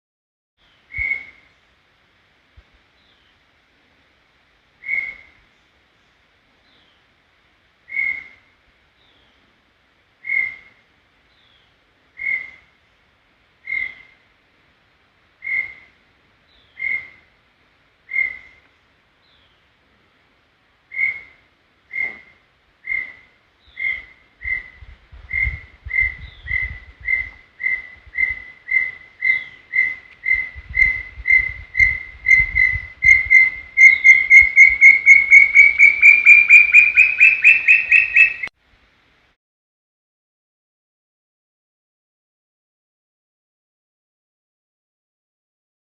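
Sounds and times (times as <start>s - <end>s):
bird whistling: 7.9s - 8.4s, 22.8s - 24.8s, 25.4s - 38.5s.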